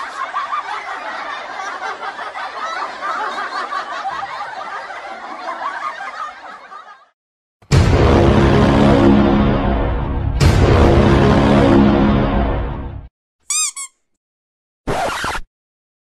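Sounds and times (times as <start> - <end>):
group laughter: 0.0 - 7.2.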